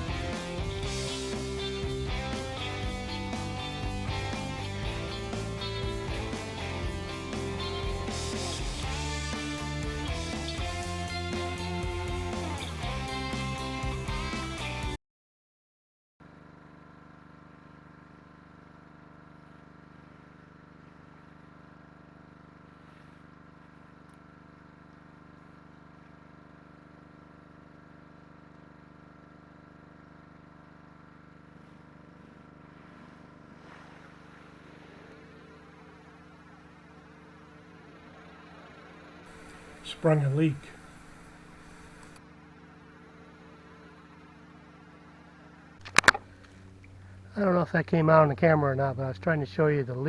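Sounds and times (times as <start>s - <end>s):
pressure washer humming: 0.0s - 13.6s, 32.8s - 38.6s, 39.3s - 42.2s
water spray hissing: 39.3s - 42.2s.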